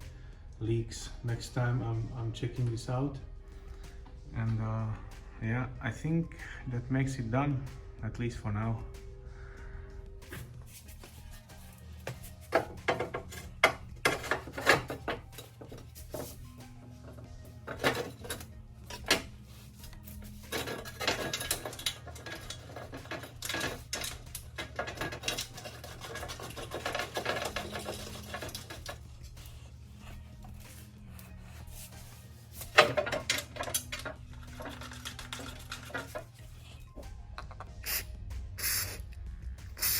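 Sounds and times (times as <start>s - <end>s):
hard objects clinking and knocking: 10.3s - 31.0s, 31.8s - 37.8s.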